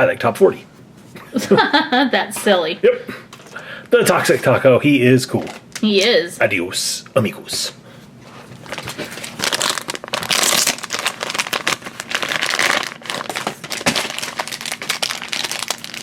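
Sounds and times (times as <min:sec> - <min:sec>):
plastic packet crinkling: 0:08.5 - 0:16.0.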